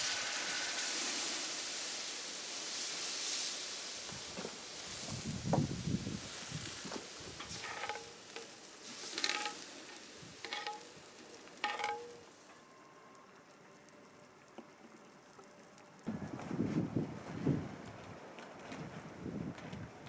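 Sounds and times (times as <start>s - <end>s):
food sizzling in a pan: 0.0s - 12.5s
utensil scraping a pan: 7.4s - 11.0s, 11.6s - 12.2s.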